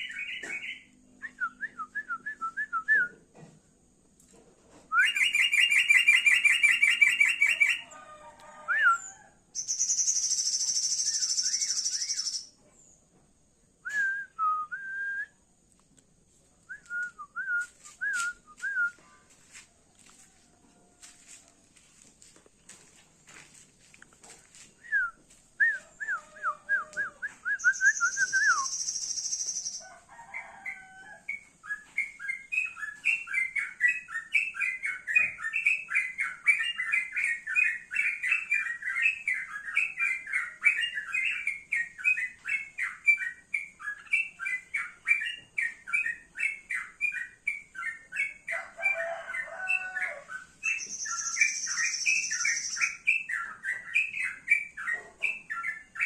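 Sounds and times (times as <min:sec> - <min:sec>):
bird singing and chattering: 0:09.6 - 0:12.5, 0:27.6 - 0:29.8, 0:50.4 - 0:56.0.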